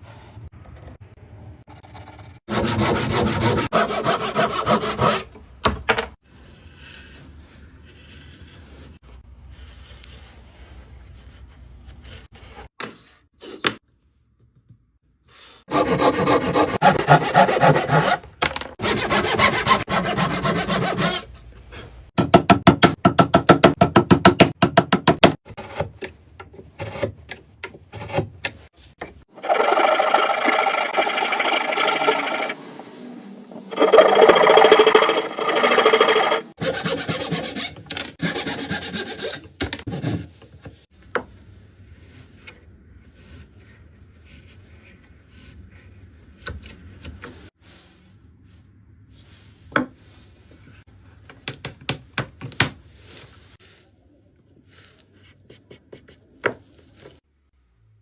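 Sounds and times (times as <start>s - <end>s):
hand tool rasping strokes: 2.5s - 5.3s, 15.7s - 18.2s, 18.8s - 21.3s, 29.4s - 32.6s, 33.7s - 39.4s.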